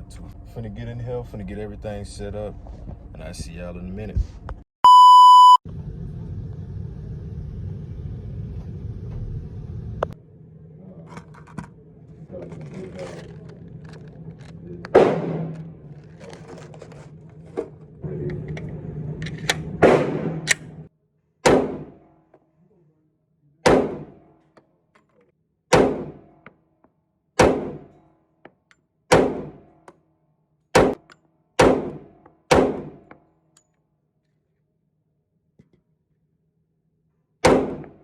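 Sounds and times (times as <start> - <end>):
handgun shots: 14.9 - 15.5, 19.8 - 20.7, 21.4 - 22.0, 23.7 - 24.2, 25.7 - 26.4, 27.4 - 28.0, 29.1 - 29.7, 30.8 - 33.1, 37.4 - 38.0.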